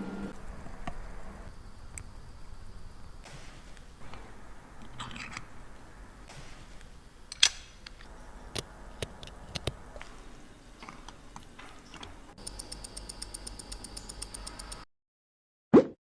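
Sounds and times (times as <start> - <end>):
tools clicking on watch: 7.3 - 9.8, 10.8 - 14.8
watch ticking fast: 12.4 - 14.9.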